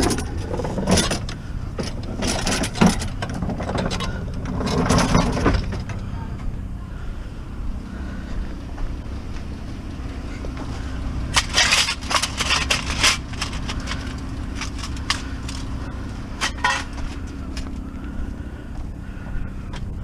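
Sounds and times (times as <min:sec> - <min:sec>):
clattering and rattling: 0:00.0 - 0:06.1, 0:10.2 - 0:17.7
vehicle engine rumbling: 0:00.0 - 0:20.0.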